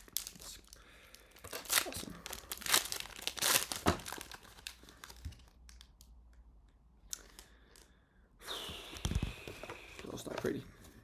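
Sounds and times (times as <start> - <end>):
foil wrapper tearing and crinkling: 1.3 - 5.9.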